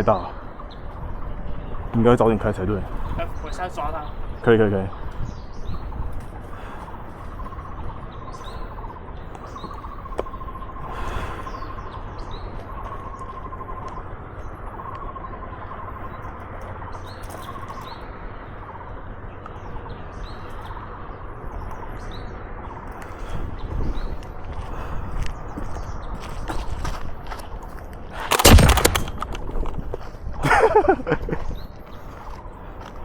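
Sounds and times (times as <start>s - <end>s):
birds warbling and chirping: 0.0s - 33.0s
wind rumble on microphone: 0.0s - 33.0s
sharp click: 28.3s - 29.5s.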